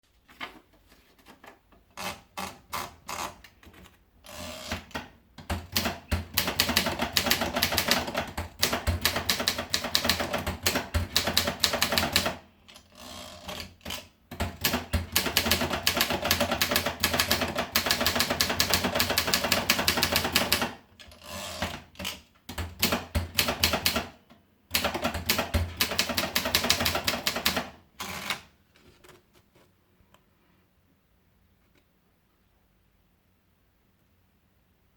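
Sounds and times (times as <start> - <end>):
manual typewriter typing: 4.3 - 28.5.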